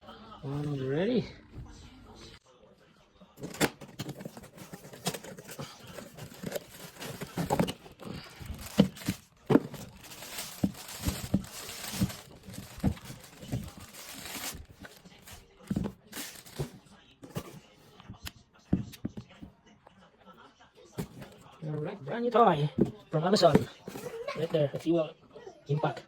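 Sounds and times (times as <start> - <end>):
box knocks and clunks: 3.4 - 15.0
packaging tearing and crinkling: 4.5 - 15.0, 16.1 - 16.7.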